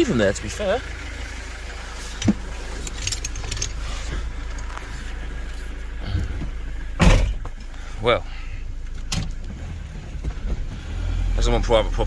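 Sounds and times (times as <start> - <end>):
van engine idling: 0.0 - 12.0
metallic clinks and jangles: 2.7 - 3.8.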